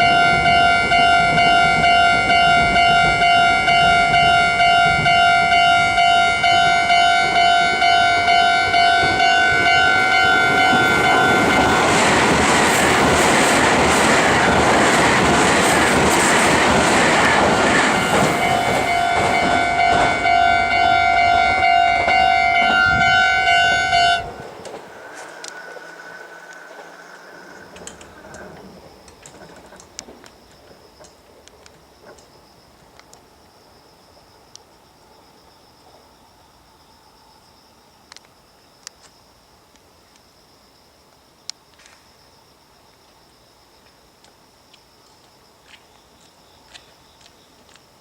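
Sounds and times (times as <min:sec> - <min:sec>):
level crossing alarm ringing: 0:00.0 - 0:12.5, 0:16.3 - 0:25.3
train wheels on rails: 0:00.0 - 0:33.3.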